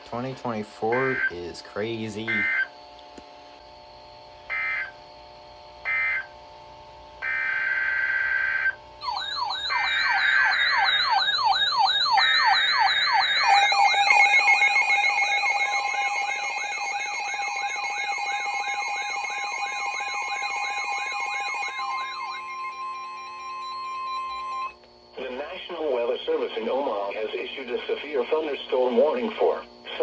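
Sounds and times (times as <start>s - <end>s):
buzzy data bursts: 0.2s - 2.9s, 9.0s - 24.8s
warbling electronic alarm: 0.7s - 2.9s, 3.8s - 6.4s, 7.2s - 24.8s
two-tone attention signal: 9.0s - 24.8s.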